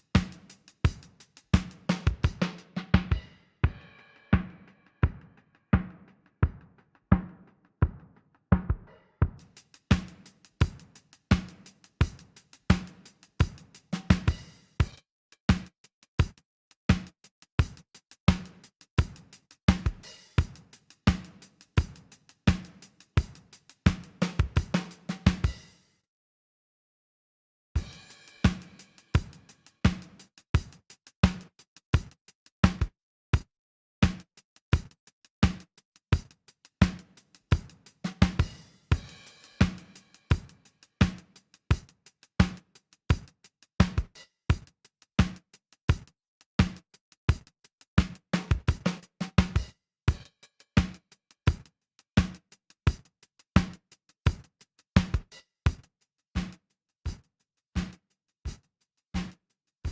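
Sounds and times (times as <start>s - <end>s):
drum kit loop: 0.0s - 5.2s, 8.8s - 15.0s, 17.6s - 25.7s, 27.8s - 30.8s, 36.8s - 41.9s, 48.0s - 50.3s
drum loop hits: 1.6s - 5.2s, 23.9s - 25.6s.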